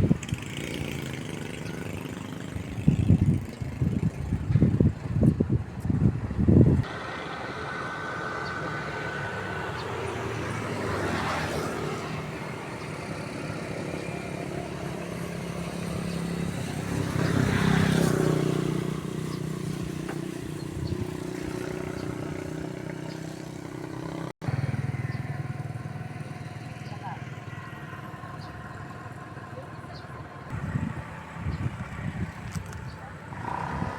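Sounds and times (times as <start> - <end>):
small engine running: 6.9 - 31.5.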